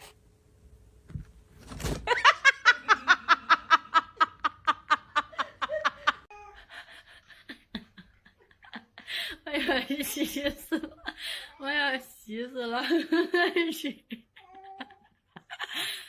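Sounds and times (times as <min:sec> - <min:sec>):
person laughing hard: 0:02.1 - 0:11.3.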